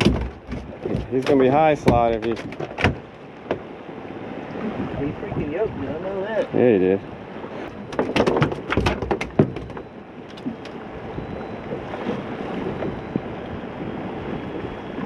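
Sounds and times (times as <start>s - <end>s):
sharp clicks and knocks: 0.0s - 3.6s, 7.9s - 10.8s
wind and water rushing: 0.0s - 15.0s.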